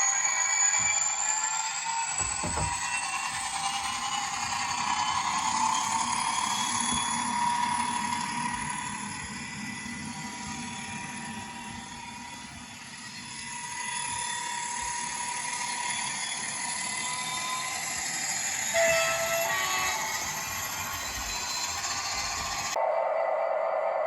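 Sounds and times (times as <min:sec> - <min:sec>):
model train motor whine: 0:00.0 - 0:22.8.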